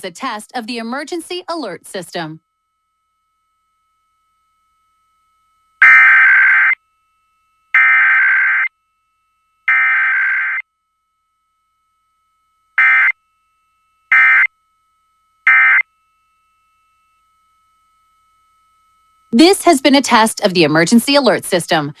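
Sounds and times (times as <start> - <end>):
short data bursts: 5.8 - 6.8, 7.8 - 8.7, 9.7 - 10.6, 12.8 - 13.2, 14.1 - 14.5, 15.5 - 15.8.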